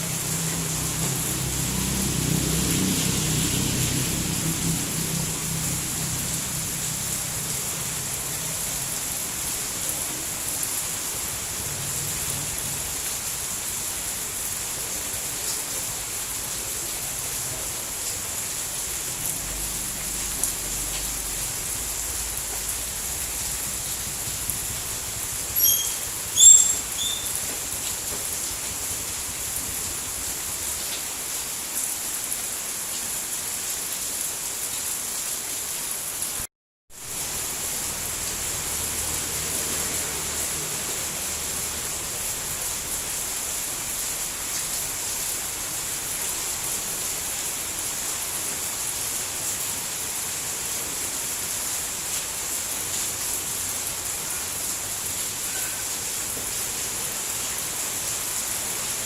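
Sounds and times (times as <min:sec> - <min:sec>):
steady rain falling: 0:00.0 - 0:59.0
short high chirps: 0:25.6 - 0:27.4.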